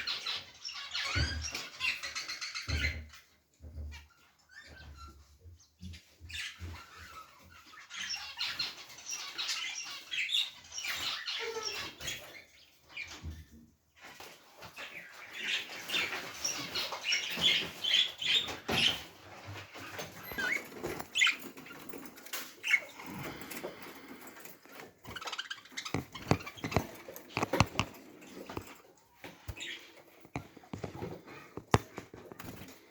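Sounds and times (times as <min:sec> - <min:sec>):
small birds chirping: 0:00.0 - 0:32.9
clicks and rustling: 0:19.8 - 0:32.9.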